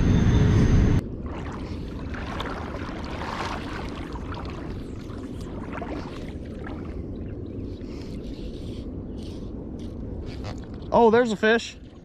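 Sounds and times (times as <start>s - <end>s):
river water flowing: 1.2s - 7.8s
faint small splashes and drips: 1.3s - 8.1s.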